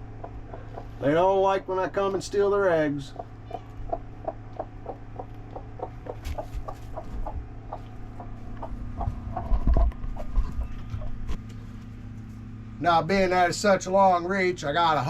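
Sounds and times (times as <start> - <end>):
hens clucking: 0.0 - 11.5.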